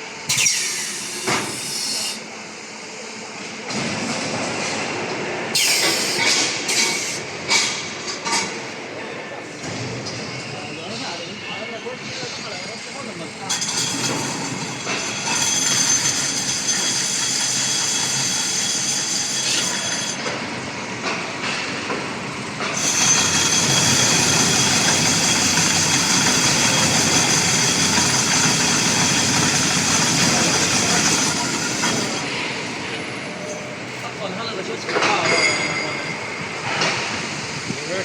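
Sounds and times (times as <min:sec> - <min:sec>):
lathe running: 0:13.3 - 0:34.0.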